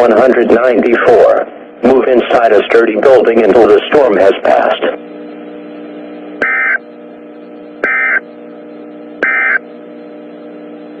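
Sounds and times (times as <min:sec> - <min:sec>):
steady radio hum: 0:00.0 - 0:11.0
warbling digital data tones: 0:06.4 - 0:06.8, 0:07.8 - 0:08.2, 0:09.2 - 0:09.6.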